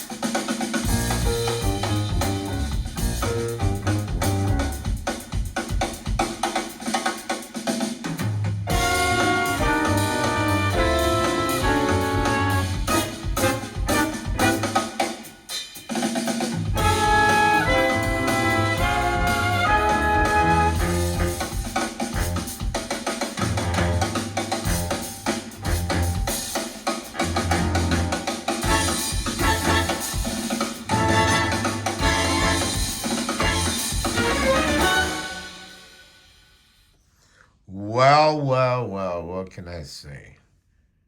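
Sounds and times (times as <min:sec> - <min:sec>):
jazz music over speakers: 0:00.0 - 0:36.1
horn melody: 0:08.7 - 0:15.1, 0:16.7 - 0:22.8, 0:23.4 - 0:36.3.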